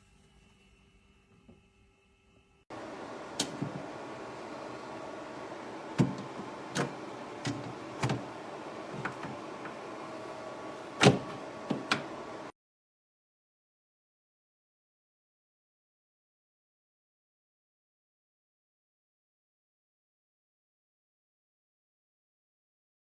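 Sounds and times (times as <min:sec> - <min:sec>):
steady hum: 0:02.7 - 0:12.5
knocks and clicks on fridge: 0:05.9 - 0:08.3, 0:11.0 - 0:12.2.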